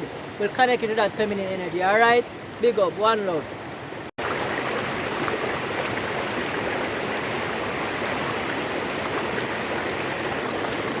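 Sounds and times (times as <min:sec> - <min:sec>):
river water rushing: 0:00.0 - 0:11.0.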